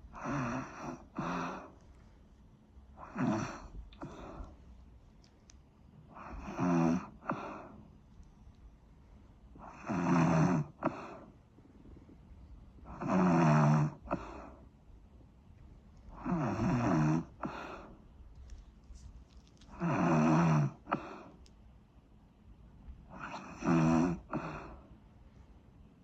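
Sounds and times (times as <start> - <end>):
person snoring: 0.1 - 1.8, 3.0 - 4.5, 6.1 - 7.8, 9.6 - 11.3, 12.8 - 14.6, 16.1 - 17.9, 19.7 - 21.3, 23.1 - 24.8.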